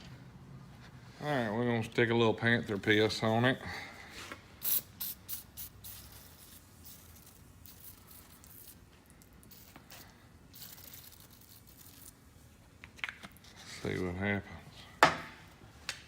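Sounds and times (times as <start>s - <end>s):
aerosol spray hissing: 4.6s - 8.8s, 9.5s - 12.1s.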